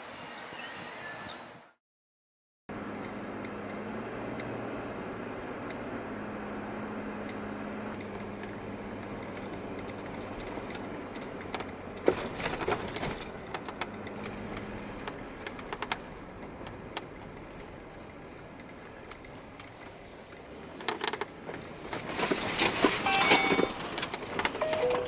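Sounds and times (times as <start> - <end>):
car road and engine hum: 2.7 - 25.0
sharp clicks and knocks: 8.0 - 19.9.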